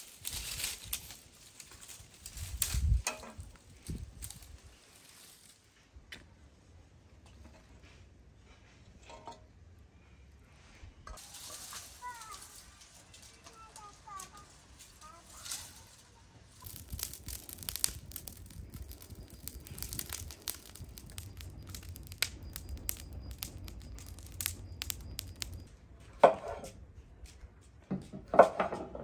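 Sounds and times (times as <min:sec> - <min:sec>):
dense crackling and crunching: 0:00.0 - 0:05.9, 0:11.1 - 0:25.7
low rumble: 0:15.7 - 0:25.8.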